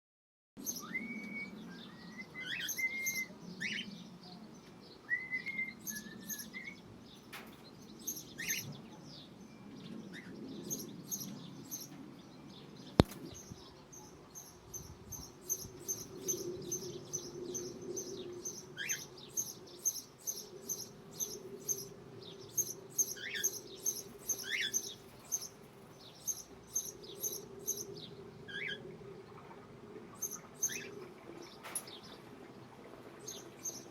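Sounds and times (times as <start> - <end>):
cockatiels chirping and calling: 2.4 - 3.9, 23.2 - 25.5
sharp click: 13.0 - 13.4.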